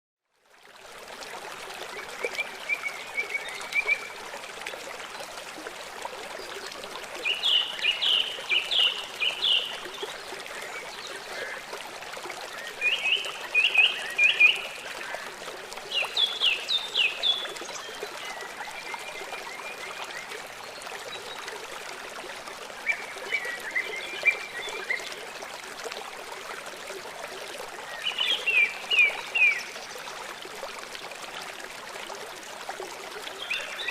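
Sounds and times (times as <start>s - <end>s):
running water: 0.3s - 33.9s
songbird singing: 7.2s - 11.5s.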